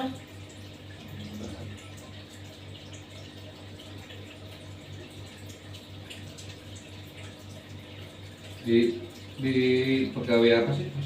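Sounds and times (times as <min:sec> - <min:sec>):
low pulsing hum: 0:00.0 - 0:08.6
running water: 0:00.0 - 0:11.0.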